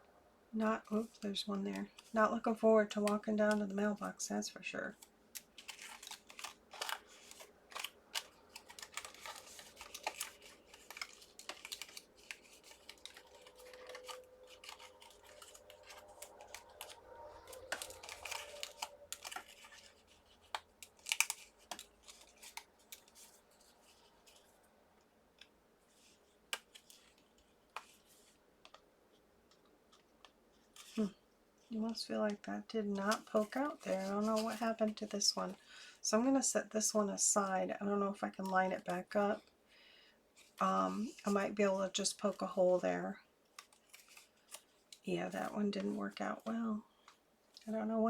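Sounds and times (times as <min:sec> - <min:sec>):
paper rustles: 0:05.0 - 0:24.6, 0:25.9 - 0:28.8, 0:31.9 - 0:35.6, 0:43.5 - 0:47.2.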